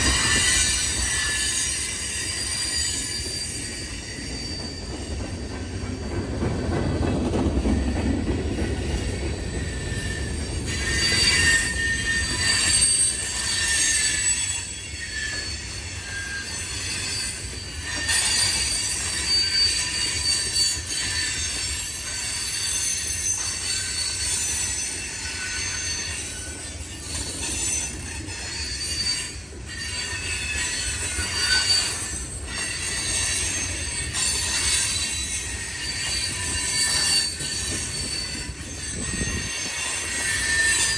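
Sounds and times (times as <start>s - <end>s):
freight train rumble: 0.0s - 40.9s
train wheels squealing: 0.0s - 40.9s.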